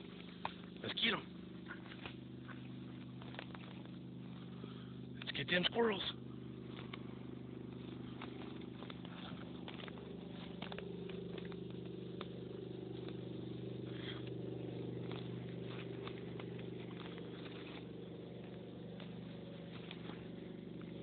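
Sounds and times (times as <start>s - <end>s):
low engine hum: 0.0s - 21.0s.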